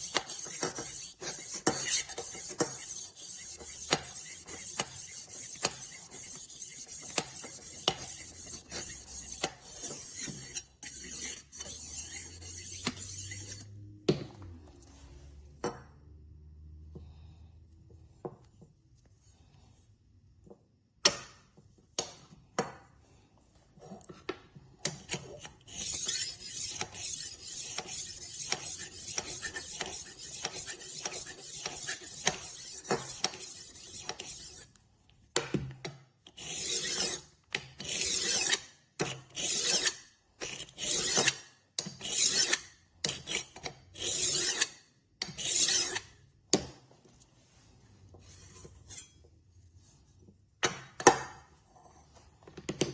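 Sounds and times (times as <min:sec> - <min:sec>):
knife scraping on sharpener: 0:00.0 - 0:13.7, 0:25.0 - 0:34.7, 0:36.4 - 0:46.2, 0:48.3 - 0:49.3.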